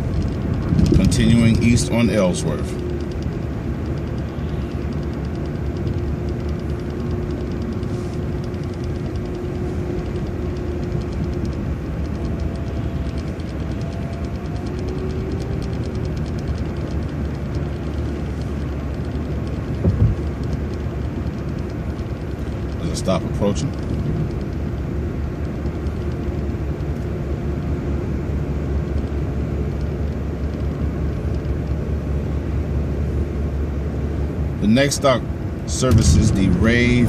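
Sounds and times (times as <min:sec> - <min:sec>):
bus engine and road noise: 0:00.0 - 0:37.0
faint whine: 0:34.5 - 0:37.0.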